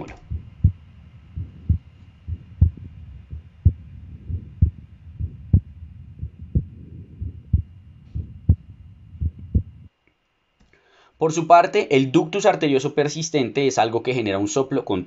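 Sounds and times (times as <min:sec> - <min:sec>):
heartbeat with harsh murmur: 0:00.0 - 0:09.9.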